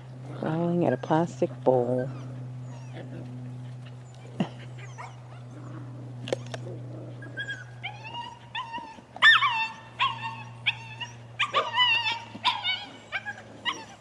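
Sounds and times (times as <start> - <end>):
puppy yipping and barking: 4.0 - 5.6, 7.2 - 14.0.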